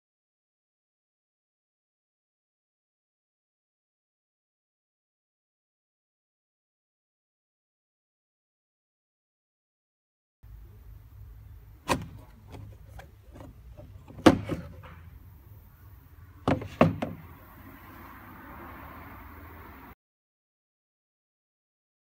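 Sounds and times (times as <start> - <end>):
plastic parts clicking and knocking: 11.8 - 15.1, 16.5 - 17.3.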